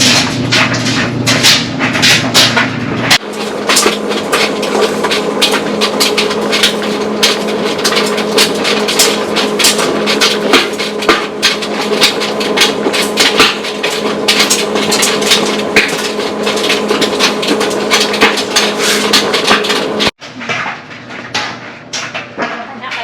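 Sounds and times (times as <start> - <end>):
clothes dryer humming: 0.0 - 23.0.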